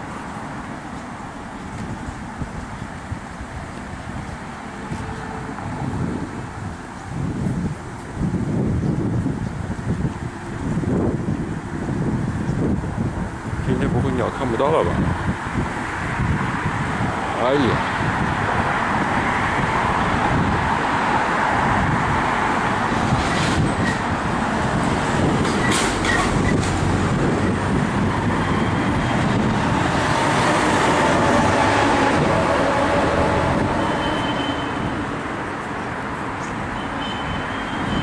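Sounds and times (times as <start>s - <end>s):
road traffic noise: 0.0s - 38.0s
vehicle passing: 14.5s - 36.8s.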